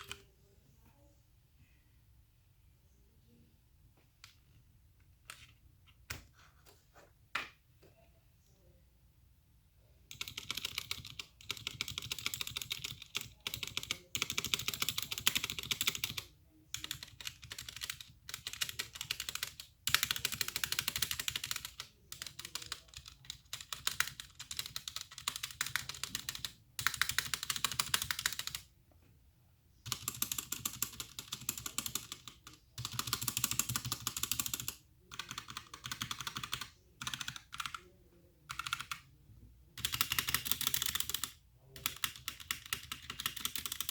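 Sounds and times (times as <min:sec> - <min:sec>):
mechanical keyboard typing: 0:00.0 - 0:00.2, 0:10.1 - 0:28.7, 0:29.9 - 0:39.0, 0:39.8 - 0:43.9.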